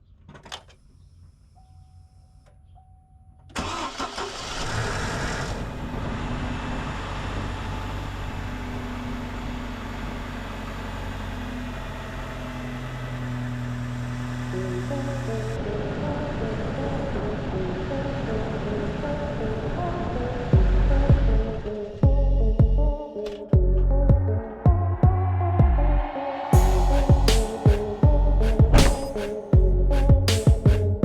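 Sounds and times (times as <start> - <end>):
engine cranking and idling: 3.6 - 5.8.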